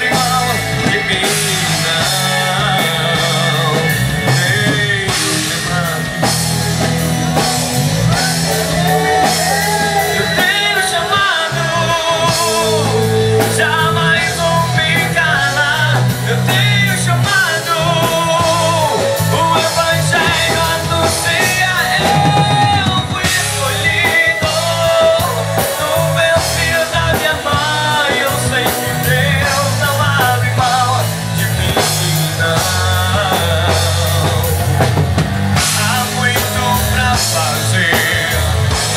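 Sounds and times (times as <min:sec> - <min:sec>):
lead singer singing: 0:00.0 - 0:38.9
rock band playing: 0:00.0 - 0:38.9.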